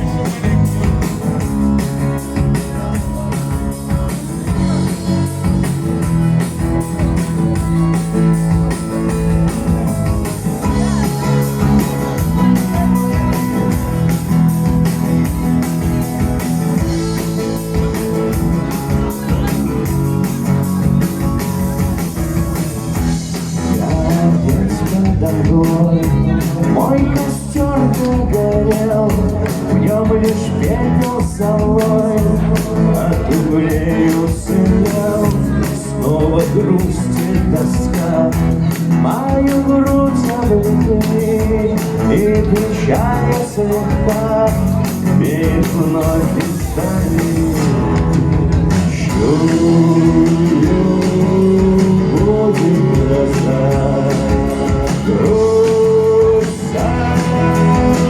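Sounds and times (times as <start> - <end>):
man singing rock song: 0.0 - 58.0
strummed acoustic guitar: 0.0 - 58.0.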